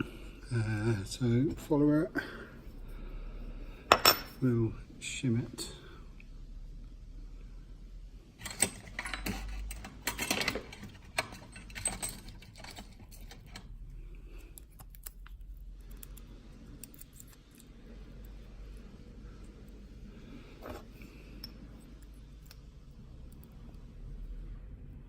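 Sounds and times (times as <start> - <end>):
small metal lock parts clinking: 8.4 - 17.8.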